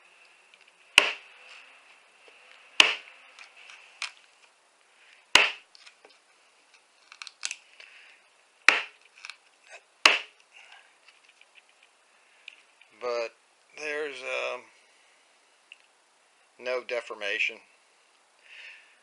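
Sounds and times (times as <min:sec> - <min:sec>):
knife stabbing into target: 0:05.4 - 0:05.6.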